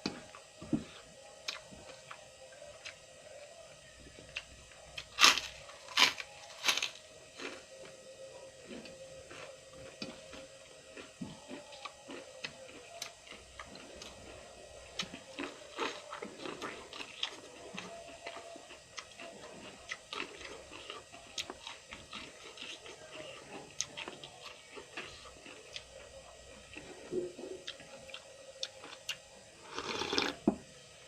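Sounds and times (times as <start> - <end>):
person chewing and smacking: 0.0 - 2.2, 8.6 - 30.4
crunchy bites: 5.0 - 7.6.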